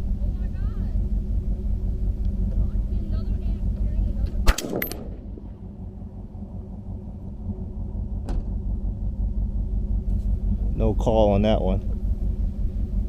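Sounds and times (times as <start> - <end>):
rifle shot echoes: 4.4 - 5.5.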